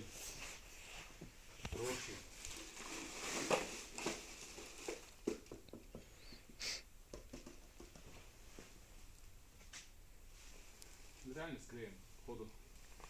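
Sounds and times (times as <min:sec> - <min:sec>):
light knocks and taps: 0:05.2 - 0:06.1, 0:07.1 - 0:08.7.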